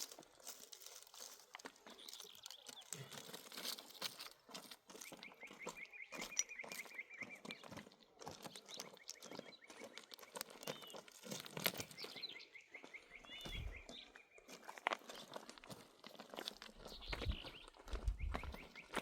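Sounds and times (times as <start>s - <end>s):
small bird chirping: 4.9s - 7.7s, 8.4s - 15.2s, 16.8s - 19.0s.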